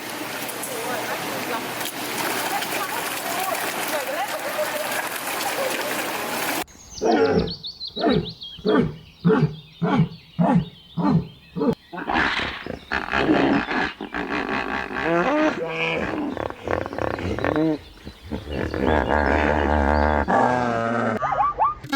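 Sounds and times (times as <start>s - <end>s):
animal calling: 7.0s - 21.8s.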